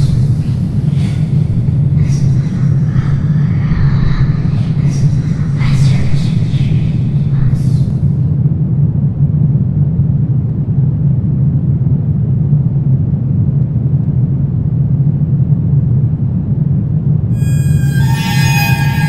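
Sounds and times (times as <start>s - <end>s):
high eerie ringing tones: 17.3s - 19.0s
low rumbling drone: 17.3s - 19.0s.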